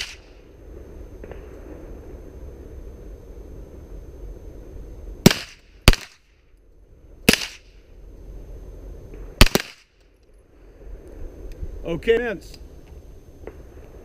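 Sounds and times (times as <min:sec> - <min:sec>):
gunshots: 0:00.0 - 0:00.3, 0:05.2 - 0:06.3, 0:07.3 - 0:07.7, 0:09.4 - 0:09.9.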